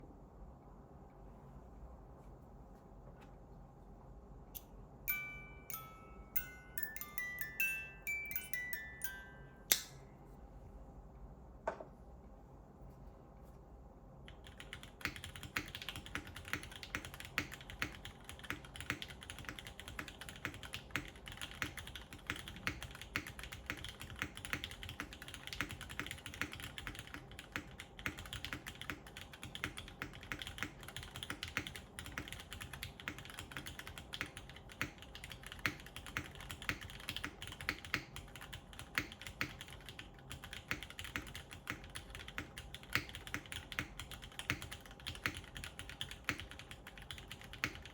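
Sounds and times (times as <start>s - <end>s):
fast typing on mechanical keyboard: 14.3s - 47.9s.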